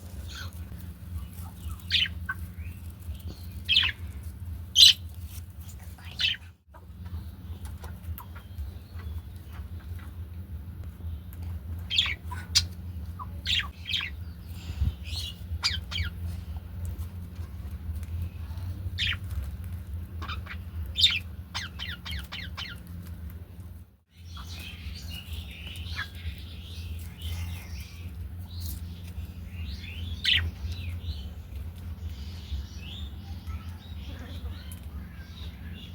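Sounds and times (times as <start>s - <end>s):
steady low hum: 0.0s - 35.9s
budgerigars chirping and chattering: 0.2s - 16.8s, 18.1s - 23.1s, 24.1s - 35.9s.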